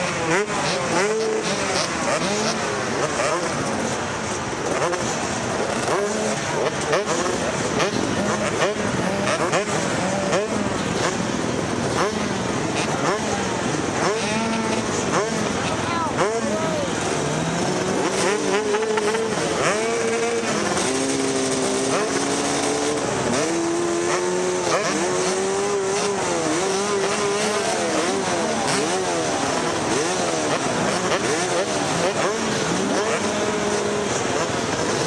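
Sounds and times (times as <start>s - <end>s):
dirt bike engine revving: 0.0s - 35.0s.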